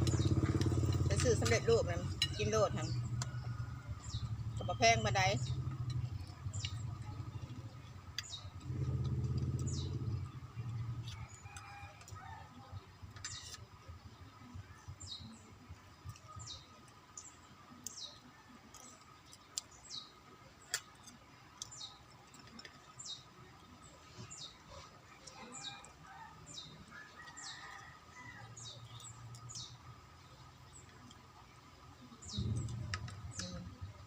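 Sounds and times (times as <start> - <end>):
bird chirping: 0.0 - 11.5, 22.8 - 34.0.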